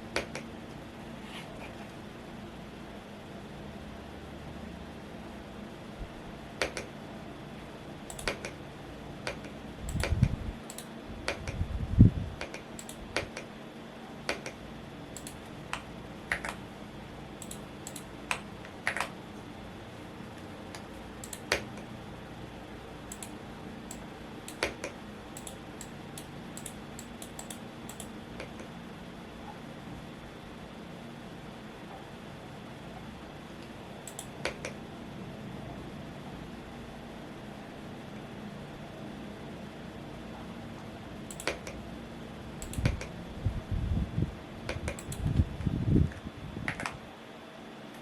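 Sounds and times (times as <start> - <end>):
fan hum: 0.0 - 48.0
mechanical keyboard typing: 8.1 - 8.6, 17.4 - 19.1, 41.3 - 41.8.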